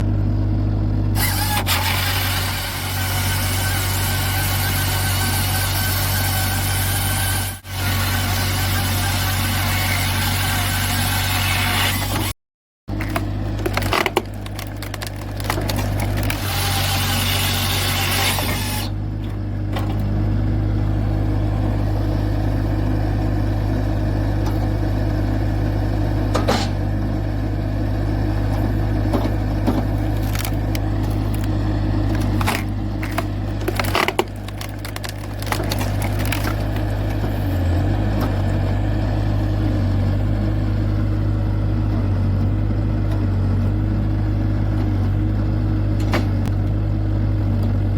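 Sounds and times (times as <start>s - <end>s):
wood cracking and splitting: 12.9s - 20.2s, 28.5s - 39.8s
machine engine running: 12.9s - 43.8s.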